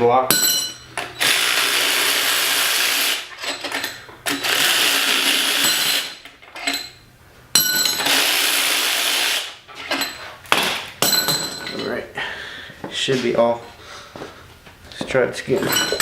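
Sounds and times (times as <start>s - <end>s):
power tool whirring: 1.2s - 3.4s, 4.3s - 6.2s, 8.0s - 9.6s.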